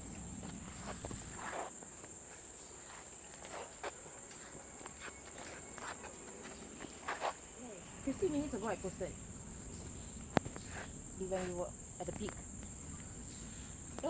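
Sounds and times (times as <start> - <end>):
footsteps on trail: 0.0 - 7.6
insects droning: 0.0 - 14.0.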